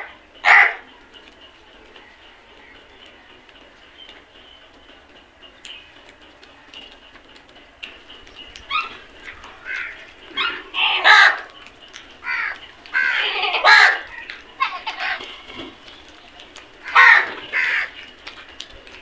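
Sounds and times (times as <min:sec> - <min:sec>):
crows cawing: 0:08.7 - 0:11.5, 0:12.2 - 0:15.6, 0:16.8 - 0:18.0.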